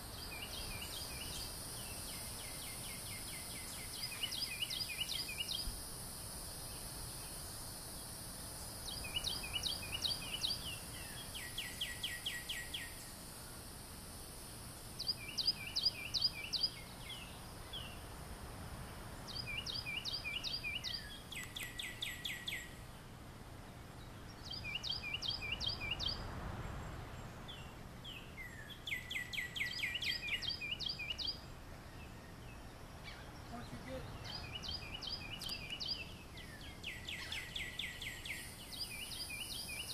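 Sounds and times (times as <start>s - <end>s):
songbird singing: 0.0s - 39.9s
steady high hiss: 0.0s - 39.9s.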